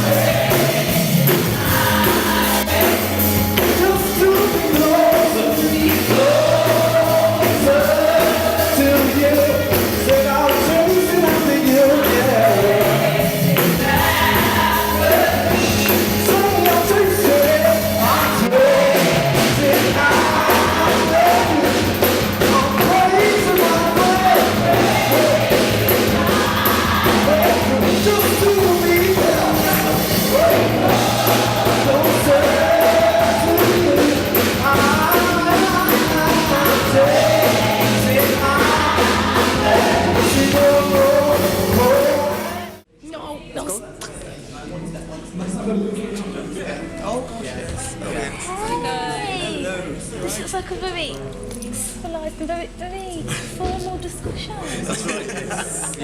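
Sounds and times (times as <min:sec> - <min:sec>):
gospel singing with band: 0:00.0 - 0:42.9.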